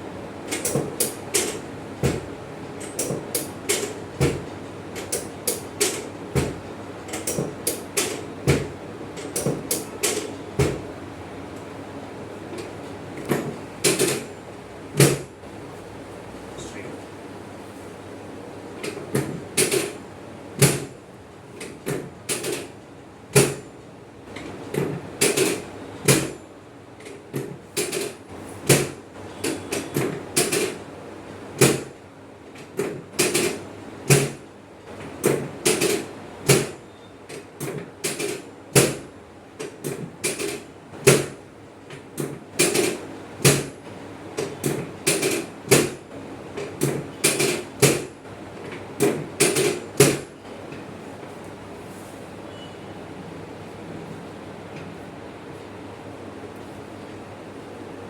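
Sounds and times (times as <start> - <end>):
sharp knocks and clicks: 0.5 - 10.9, 46.6 - 50.8.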